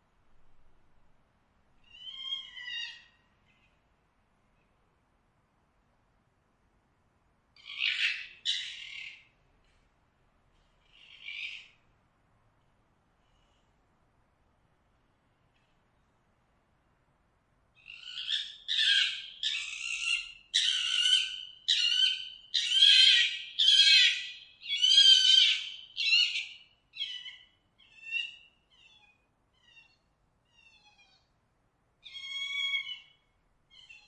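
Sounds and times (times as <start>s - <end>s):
fox calling: 1.8s - 3.2s, 17.8s - 31.3s, 32.0s - 34.0s.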